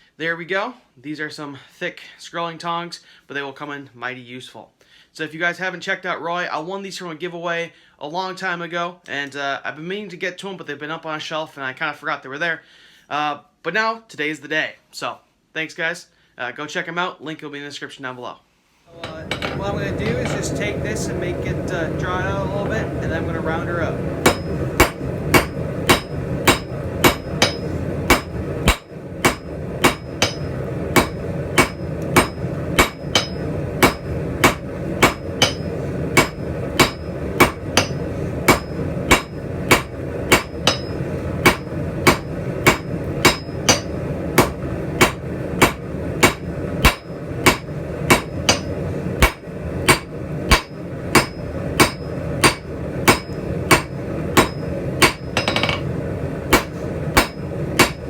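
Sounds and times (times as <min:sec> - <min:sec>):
steady background noise: 0:18.9 - 0:58.0
hammer striking hot steel on anvil: 0:19.0 - 0:55.9, 0:56.5 - 0:58.0.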